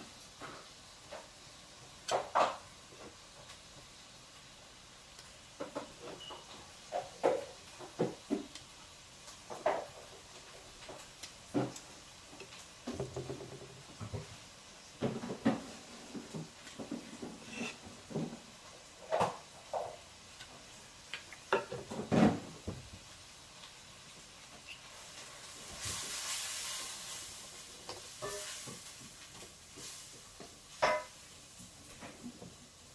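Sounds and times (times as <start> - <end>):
hard objects knocking and clattering: 12.8 - 14.4.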